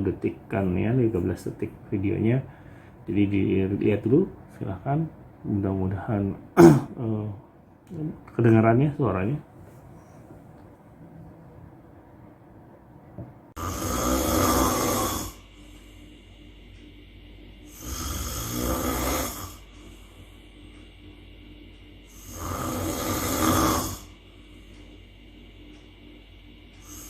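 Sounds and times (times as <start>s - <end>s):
quiet breathing: 2.4s - 3.1s
man snoring loudly: 6.6s - 6.9s, 13.6s - 15.4s, 17.8s - 19.4s, 22.3s - 24.0s.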